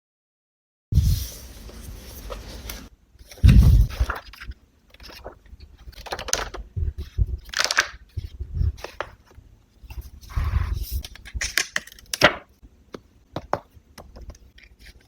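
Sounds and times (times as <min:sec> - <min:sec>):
paper rustling and scraping: 0:01.0 - 0:09.3, 0:09.9 - 0:11.6.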